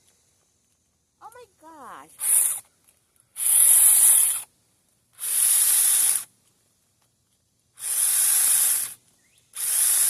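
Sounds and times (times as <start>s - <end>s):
small chainsaw hissing bursts: 2.2s - 2.7s, 3.3s - 4.5s, 5.2s - 6.3s, 7.8s - 10.0s.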